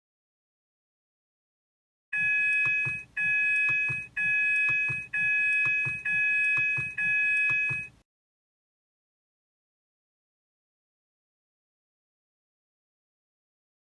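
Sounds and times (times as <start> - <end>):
seatbelt warning chimes: 2.2 - 8.0.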